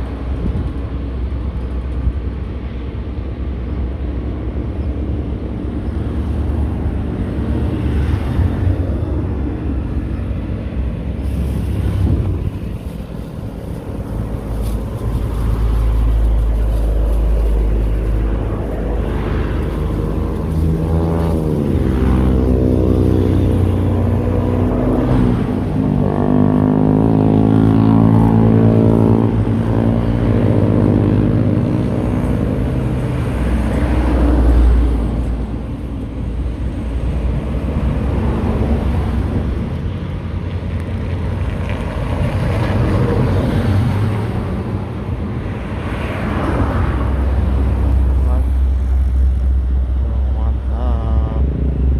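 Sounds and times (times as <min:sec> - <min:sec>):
heavy vehicle engine: 0:00.0 - 0:51.9
road traffic rumble: 0:00.0 - 0:51.9.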